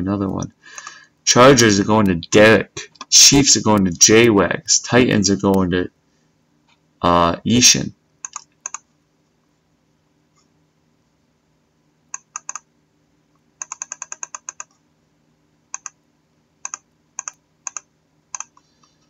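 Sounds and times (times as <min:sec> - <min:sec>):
computer keyboard typing: 0:08.2 - 0:08.8, 0:12.1 - 0:12.7, 0:13.6 - 0:14.8, 0:15.7 - 0:16.0, 0:16.6 - 0:18.6.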